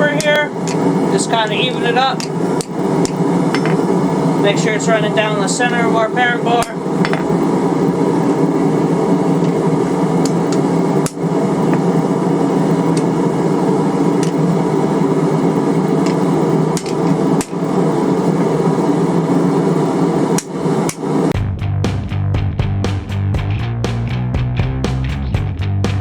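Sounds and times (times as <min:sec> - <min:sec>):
rapid hammering on hot steel: 0:00.0 - 0:03.9, 0:10.2 - 0:12.0, 0:16.0 - 0:17.7.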